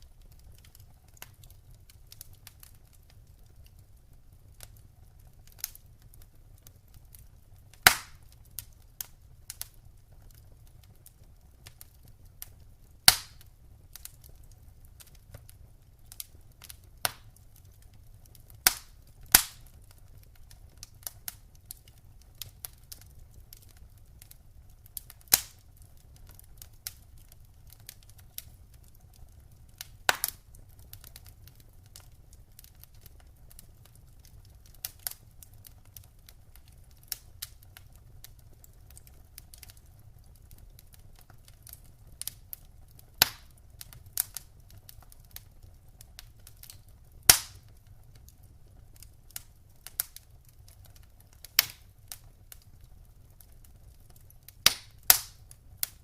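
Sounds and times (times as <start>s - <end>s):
wood fire crackling: 0.0s - 56.0s
sharp loud pops of fire: 7.8s - 8.2s, 13.1s - 13.4s, 18.6s - 19.6s, 30.1s - 30.4s, 43.2s - 43.5s, 47.2s - 47.6s, 51.6s - 51.8s, 54.6s - 55.4s.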